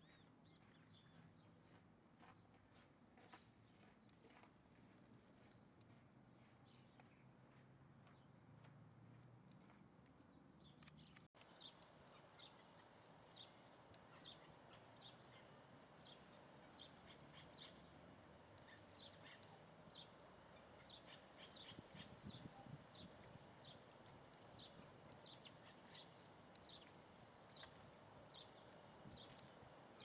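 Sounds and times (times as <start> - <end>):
small bird chirping: 10.6 - 30.0
steady background hiss: 11.4 - 30.0.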